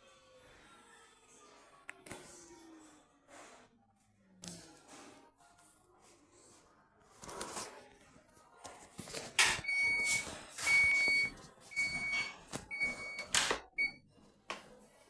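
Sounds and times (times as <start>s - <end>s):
washing machine beeper: 9.4s - 14.0s.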